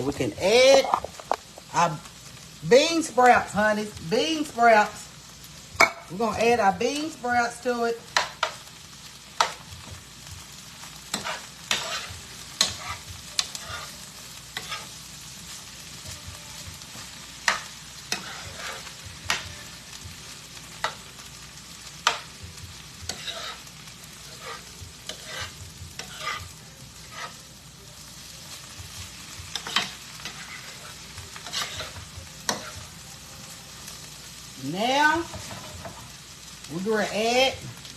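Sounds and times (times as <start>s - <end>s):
food sizzling in a pan: 0.0s - 37.9s
utensil scraping a pan: 11.1s - 15.0s, 17.5s - 19.6s, 23.1s - 27.4s, 29.4s - 32.8s.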